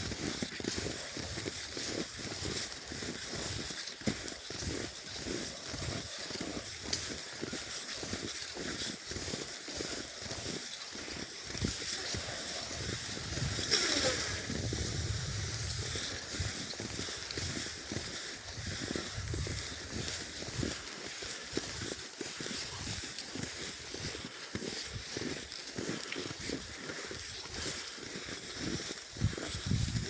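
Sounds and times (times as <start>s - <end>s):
skis squeaking on snow: 8.5s - 21.4s.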